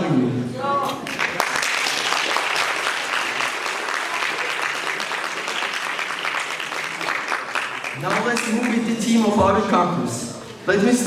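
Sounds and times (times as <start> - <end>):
audience applauding: 0.9 - 9.0.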